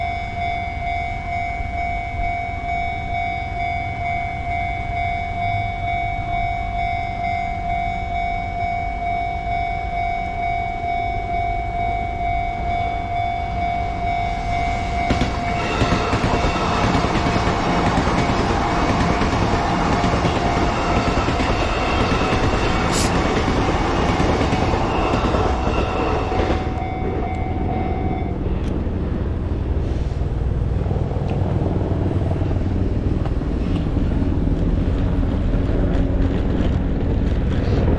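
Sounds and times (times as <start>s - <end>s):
railroad crossing bell: 0.0s - 28.7s
train wheels rumbling on rails: 12.2s - 37.9s.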